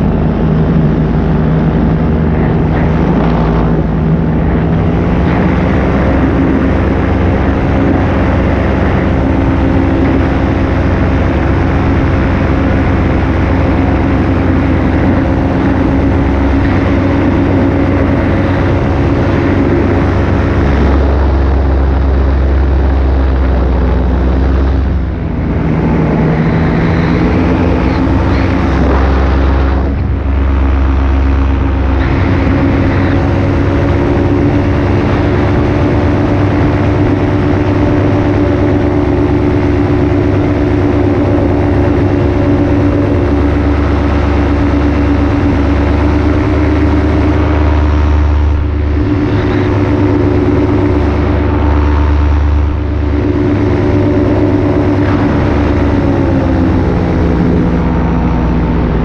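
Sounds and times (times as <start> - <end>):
paramotor engine and propeller drone: 0.0 - 59.0.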